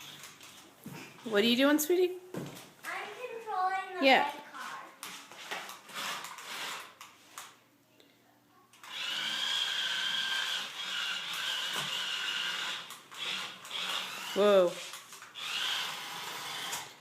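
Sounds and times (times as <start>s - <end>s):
toy car electric motor whining: 8.8s - 14.7s, 15.3s - 17.0s.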